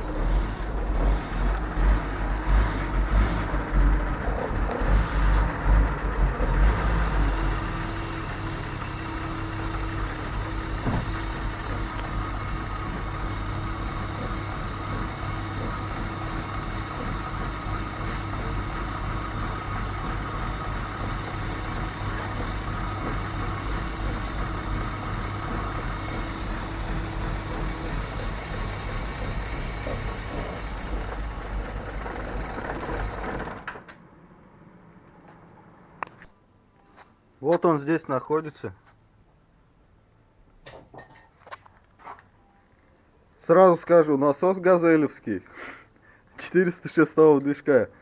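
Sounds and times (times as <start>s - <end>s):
car engine idling: 0.0s - 33.6s.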